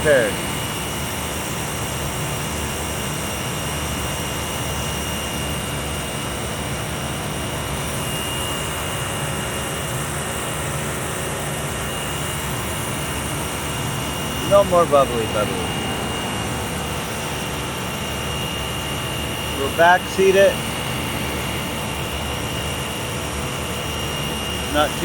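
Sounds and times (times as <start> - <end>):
chiller machinery hum: 0.0 - 25.0
thin high whine: 0.0 - 25.0.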